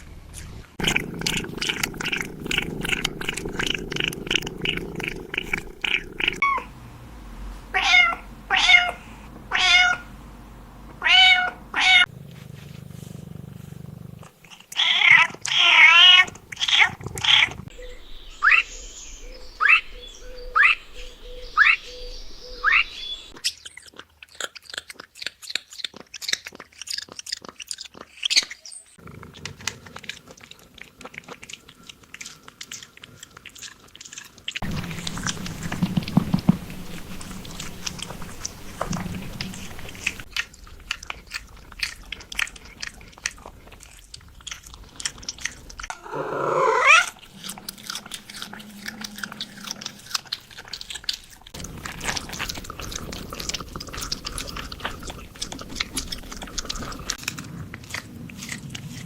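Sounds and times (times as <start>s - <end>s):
crunching chewing clicks: 0.3s - 6.5s, 10.8s - 18.6s, 22.7s - 46.0s, 46.8s - 59.0s
cat meowing: 7.7s - 10.1s, 11.0s - 12.1s.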